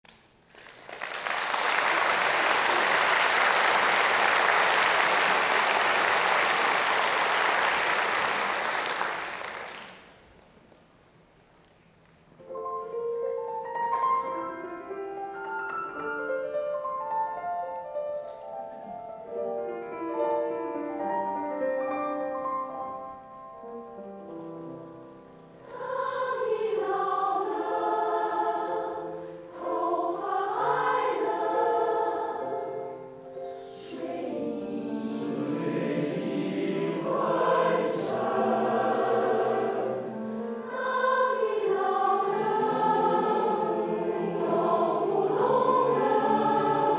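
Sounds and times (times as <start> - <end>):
choir singing: 1.5 - 9.8, 25.6 - 46.9.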